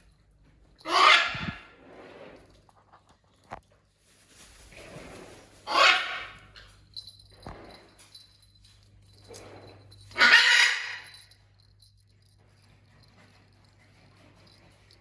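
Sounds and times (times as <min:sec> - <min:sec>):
harsh animal calls: 0:00.9 - 0:01.7, 0:10.1 - 0:11.2.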